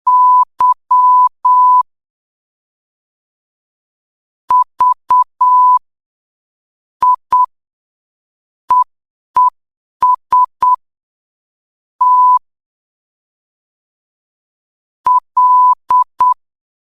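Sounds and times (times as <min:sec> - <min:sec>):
morse code beeps: 0:00.1 - 0:01.9, 0:04.5 - 0:05.8, 0:07.0 - 0:07.5, 0:08.7 - 0:10.8, 0:12.0 - 0:12.4, 0:15.1 - 0:16.4.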